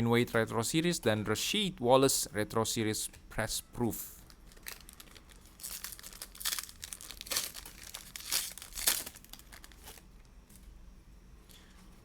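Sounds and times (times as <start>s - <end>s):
wrapper tearing and crinkling: 4.2s - 10.1s.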